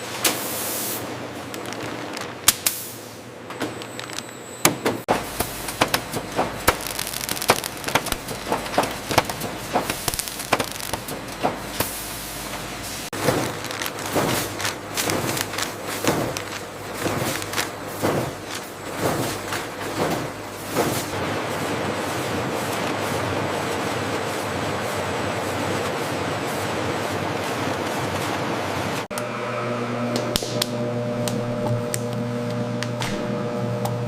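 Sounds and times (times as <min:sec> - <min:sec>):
low steady machine hum: 0:02.1 - 0:34.0
sharp machinery clicks: 0:05.7 - 0:11.6.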